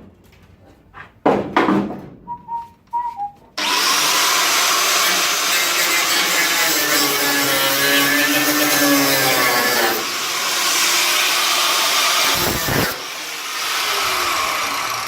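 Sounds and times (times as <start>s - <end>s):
power tool working metal: 3.6s - 15.0s.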